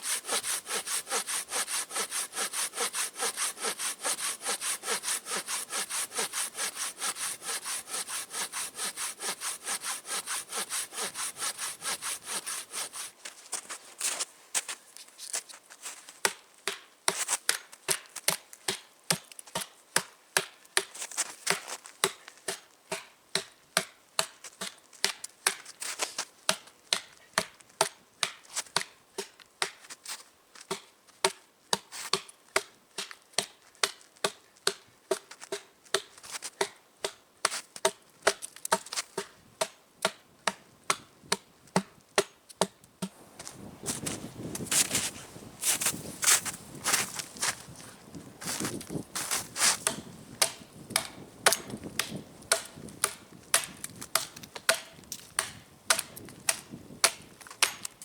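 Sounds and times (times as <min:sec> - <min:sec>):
axe chopping into a log: 0:48.5 - 0:57.9.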